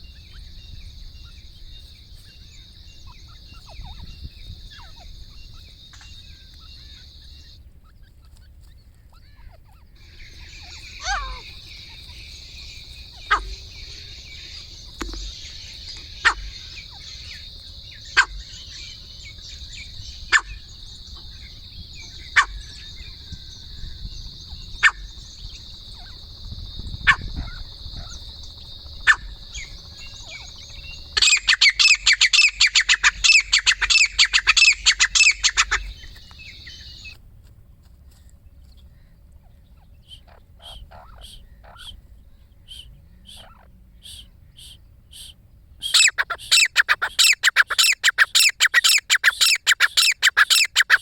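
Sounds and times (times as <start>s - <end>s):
steady high drone: 0.0s - 7.7s, 9.9s - 47.0s
rapid bird chattering: 0.0s - 37.2s, 38.7s - 51.0s
short sharp bird calls: 39.8s - 42.0s, 42.6s - 51.0s.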